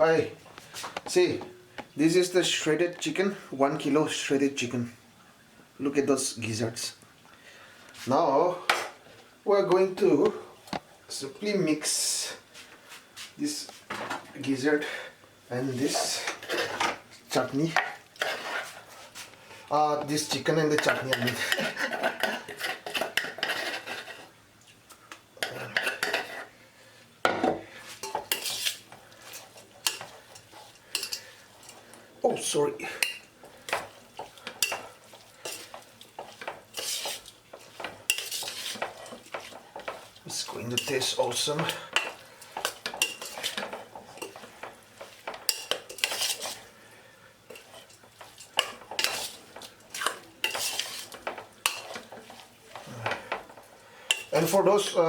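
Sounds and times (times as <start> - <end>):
spoon scraping a dish: 15.9 - 17.0, 17.8 - 19.3, 20.8 - 24.3, 25.4 - 26.5, 27.9 - 31.9, 32.9 - 46.7, 47.5 - 54.6.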